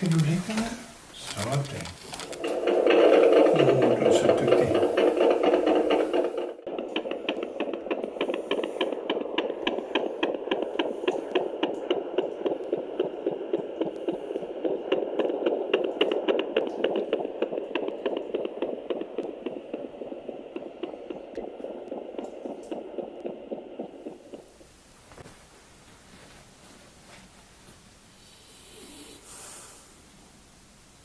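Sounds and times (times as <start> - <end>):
doppler heartbeat whooshing pulse: 2.3 - 24.7.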